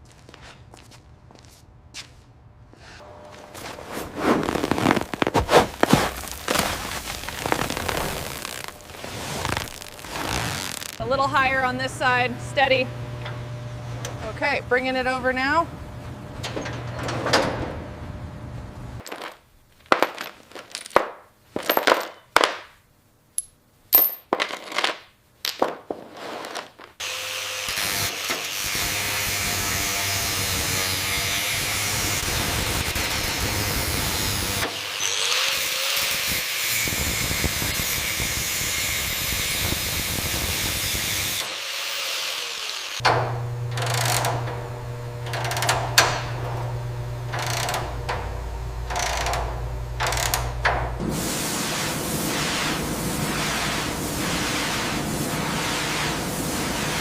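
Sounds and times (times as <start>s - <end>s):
power tool running: 4.5s - 15.6s, 27.0s - 52.2s
low steady hum: 11.0s - 19.7s
metal knocks and clanks: 16.4s - 17.9s.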